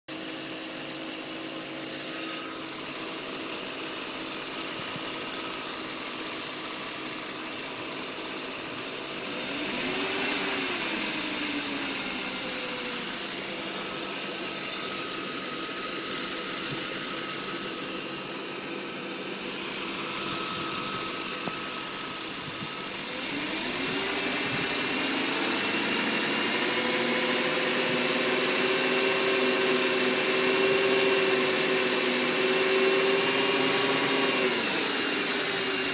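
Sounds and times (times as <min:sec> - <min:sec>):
car engine idling: 0:00.2 - 0:26.6
engine revving: 0:01.0 - 0:35.9
engine ticking: 0:02.5 - 0:27.1.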